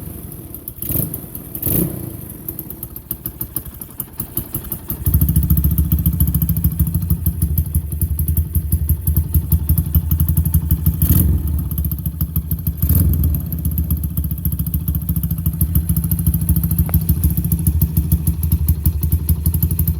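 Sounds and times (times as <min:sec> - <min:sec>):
motorcycle engine idling: 0:00.0 - 0:19.9
motorcycle throttle blips: 0:04.1 - 0:19.9.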